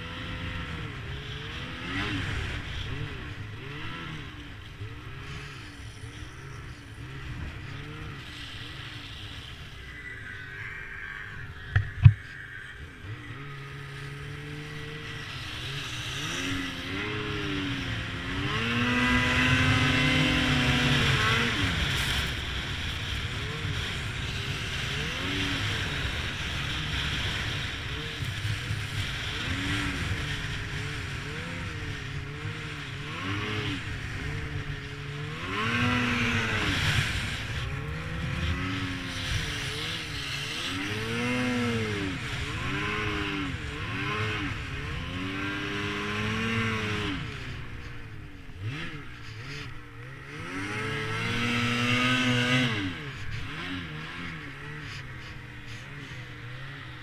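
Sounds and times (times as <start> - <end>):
snowmobile engine revving: 0.0 - 57.0.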